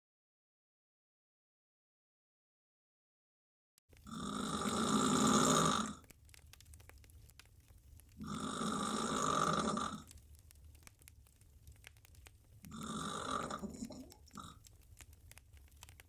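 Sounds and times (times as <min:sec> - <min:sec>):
woman snoring: 0:04.1 - 0:06.0, 0:08.2 - 0:10.1, 0:12.7 - 0:14.5.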